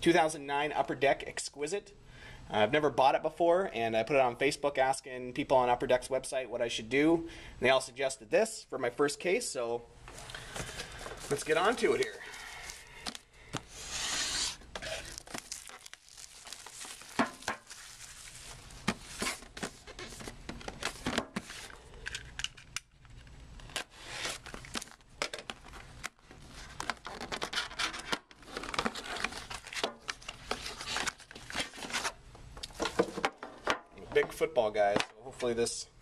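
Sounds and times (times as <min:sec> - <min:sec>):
packaging being torn open: 0:13.9 - 0:20.2, 0:21.9 - 0:32.2.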